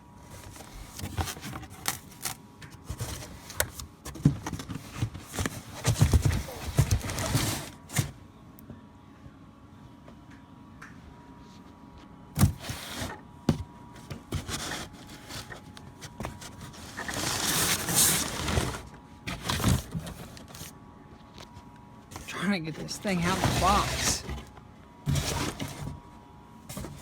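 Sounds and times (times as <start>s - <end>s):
cardboard scraping and rustling: 0.3s - 8.2s, 12.4s - 13.2s, 14.0s - 20.7s, 22.8s - 24.5s, 25.1s - 26.0s, 26.7s - 27.0s.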